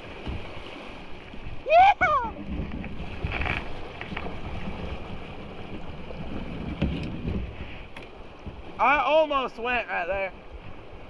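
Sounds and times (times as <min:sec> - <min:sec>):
light knocks of boat or paddle: 0:00.0 - 0:09.7
rushing creek water: 0:00.0 - 0:11.0
wind rumbling on microphone: 0:00.0 - 0:11.0
person shouting: 0:01.6 - 0:02.4.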